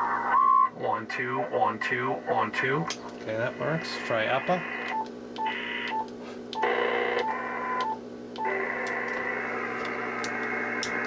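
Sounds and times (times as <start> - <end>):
radio static hiss: 1.2 - 4.9.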